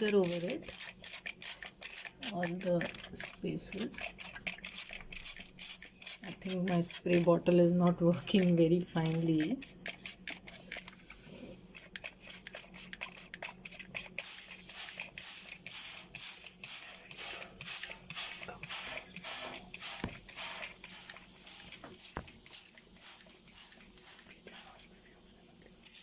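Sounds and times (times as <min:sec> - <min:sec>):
spray bottle hissing: 0:14.2 - 0:24.9.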